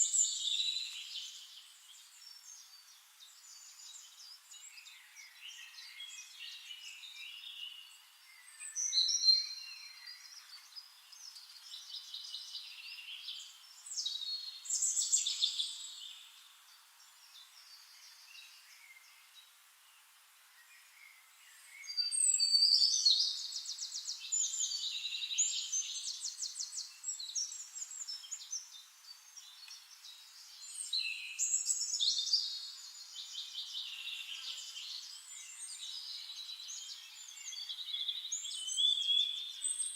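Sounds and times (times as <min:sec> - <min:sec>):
birds chirping and trilling: 0:00.0 - 0:39.9.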